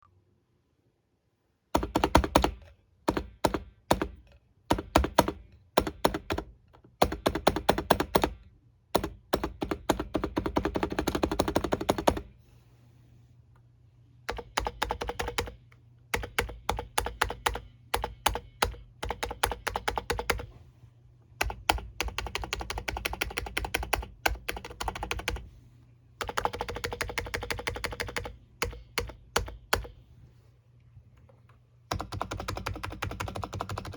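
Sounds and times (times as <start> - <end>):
keyboard typing clicks: 14.3 - 20.5, 21.4 - 25.4, 26.2 - 30.0, 31.9 - 33.9.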